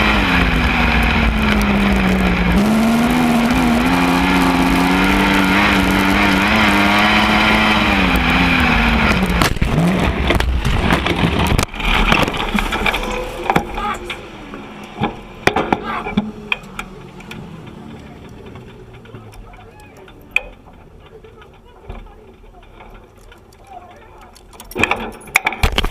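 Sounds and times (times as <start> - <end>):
race car engine revving: 0.0 - 21.8.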